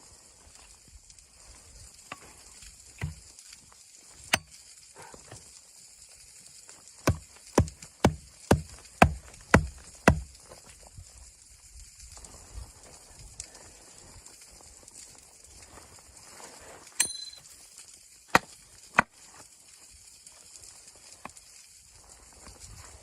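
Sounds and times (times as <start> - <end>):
steady high hiss: 0.0 - 23.0
wood chopping strikes: 3.0 - 3.3, 4.3 - 4.6, 7.0 - 10.4, 18.3 - 19.1.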